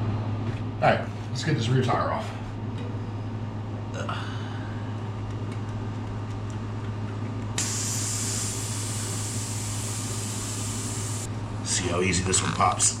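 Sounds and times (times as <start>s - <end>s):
steady low hum: 0.0s - 13.0s
air hissing out of a tire: 7.6s - 11.3s.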